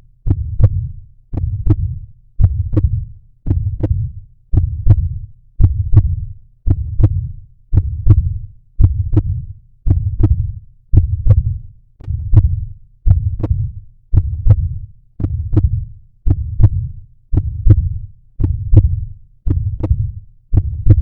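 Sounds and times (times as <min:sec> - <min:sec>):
heartbeat thumps: 0:00.2 - 0:21.0.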